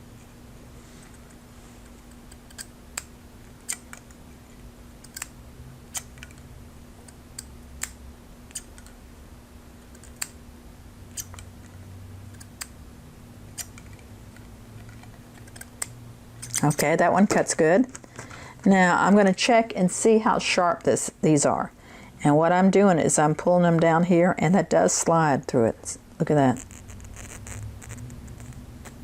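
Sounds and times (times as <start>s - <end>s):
faint low hum: 0.0s - 29.0s
shears snipping hair: 5.9s - 6.2s, 13.6s - 13.9s, 15.6s - 17.2s.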